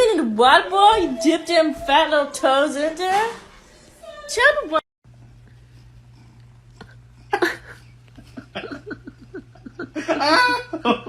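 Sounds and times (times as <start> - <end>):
person laughing: 7.3 - 11.0.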